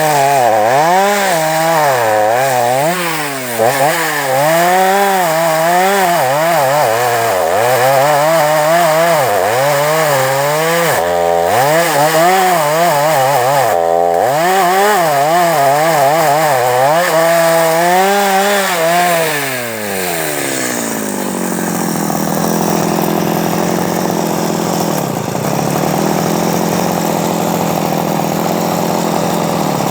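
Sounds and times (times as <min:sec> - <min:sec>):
chainsaw cutting wood: 0:00.0 - 0:29.9
chainsaw idling: 0:00.0 - 0:29.9.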